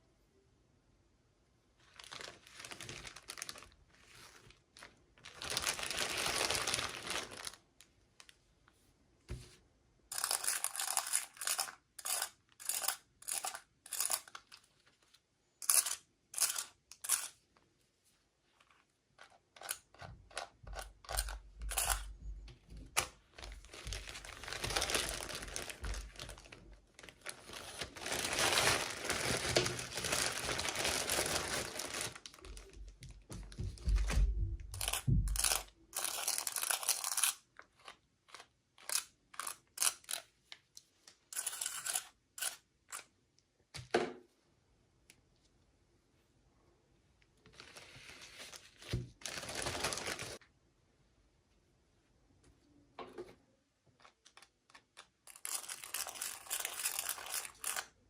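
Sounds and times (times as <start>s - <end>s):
packaging crinkling and tearing: 1.8s - 8.3s, 23.0s - 32.8s, 47.5s - 50.4s, 54.1s - 57.9s.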